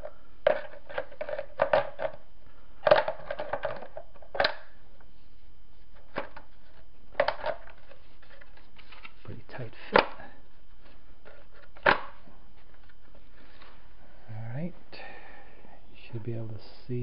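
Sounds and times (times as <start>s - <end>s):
plastic clicks knocks and scraping: 0.0s - 2.2s, 2.8s - 4.6s, 6.0s - 9.1s.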